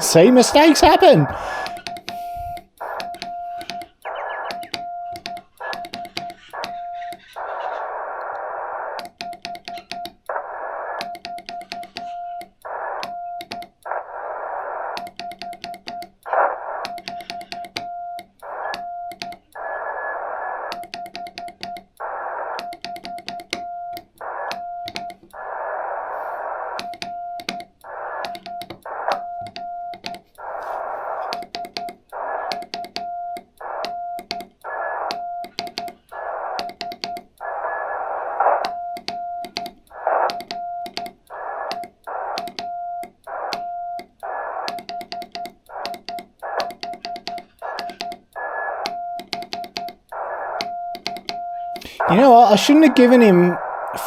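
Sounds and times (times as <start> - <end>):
radio band hiss: 0.0 - 4.7, 5.5 - 9.0, 10.3 - 11.0, 11.9 - 13.1, 13.9 - 15.0, 16.2 - 17.4, 18.4 - 18.7, 19.6 - 20.7, 25.3 - 26.8, 30.4 - 31.4, 32.1 - 32.5, 36.1 - 36.6, 37.4 - 38.6, 39.9 - 40.3, 51.8 - 54.0
sharp clicks: 0.0 - 7.4, 8.2 - 10.4, 11.0 - 14.0, 14.9 - 16.2, 16.8 - 19.6, 20.6 - 25.4, 26.8 - 30.2, 31.3 - 37.5, 38.6 - 52.0
morse code tone: 0.0 - 7.8.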